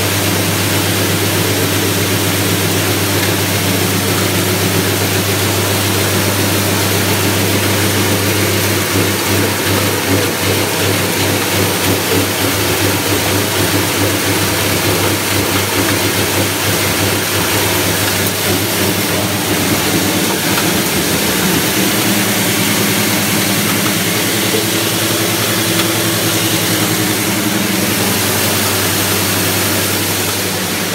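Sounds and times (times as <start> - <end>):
engine running steadily: 0.0 - 30.9.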